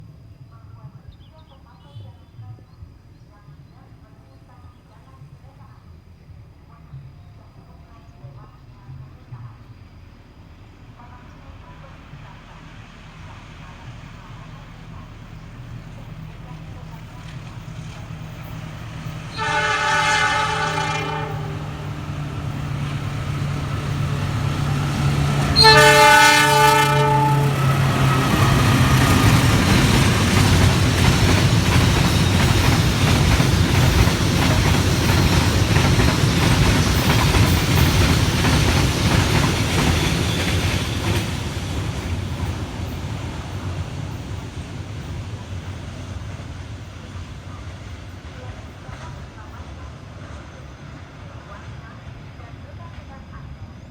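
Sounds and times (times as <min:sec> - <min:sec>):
train rumble and rail clatter: 0:00.0 - 0:53.9
locomotive engine hum: 0:07.4 - 0:53.9
locomotive horn blasts: 0:19.3 - 0:22.2, 0:23.5 - 0:30.2.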